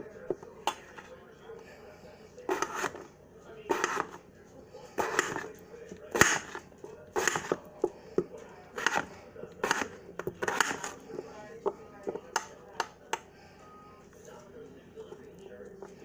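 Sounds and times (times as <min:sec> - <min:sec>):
knife cutting potato on board: 0:02.5 - 0:03.1, 0:03.7 - 0:04.2, 0:05.0 - 0:05.5, 0:06.1 - 0:07.6, 0:08.2 - 0:11.0.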